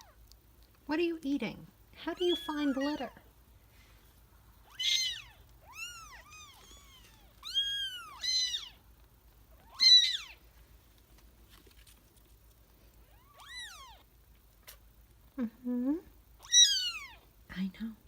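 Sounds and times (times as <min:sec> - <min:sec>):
kittens meowing: 0:02.1 - 0:03.3, 0:04.6 - 0:08.8, 0:09.5 - 0:10.4, 0:13.0 - 0:14.1, 0:16.4 - 0:17.3.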